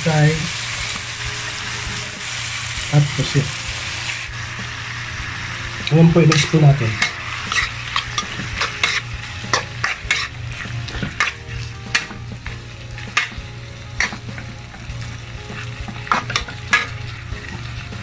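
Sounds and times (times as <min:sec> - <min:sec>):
food sizzling in a frying pan: 0:00.0 - 0:18.0
utensil scraping and knocking pan: 0:05.9 - 0:12.3.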